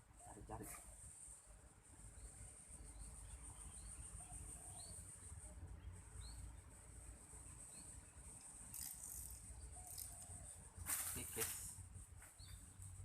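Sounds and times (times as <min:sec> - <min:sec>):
insects buzzing: 0:00.0 - 0:13.0
small bird chirping: 0:00.2 - 0:13.0.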